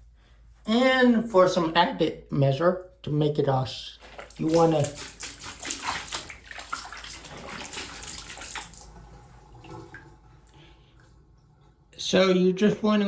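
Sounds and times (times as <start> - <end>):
water splashing with clothes: 3.9 - 11.3.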